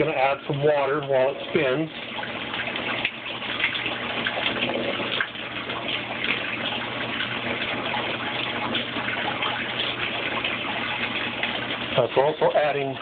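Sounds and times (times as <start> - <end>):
water rushing into washing machine: 0.0 - 13.0.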